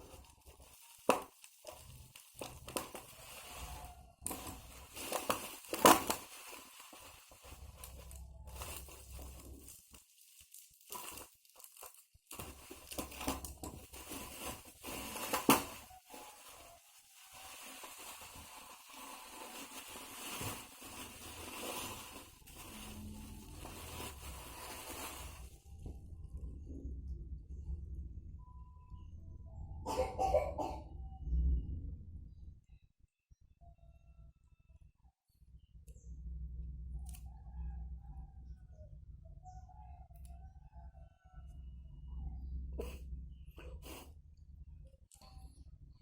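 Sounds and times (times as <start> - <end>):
packaging crinkling and tearing: 0.0 - 25.6.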